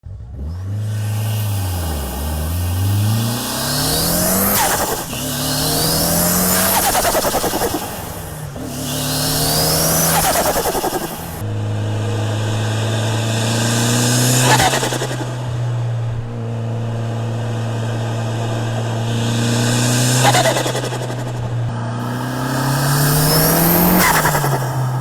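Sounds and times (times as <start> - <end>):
car engine revving: 0.1 - 25.0
turbo whistle: 0.8 - 11.2
turbo flutter: 0.8 - 11.4, 20.2 - 25.0.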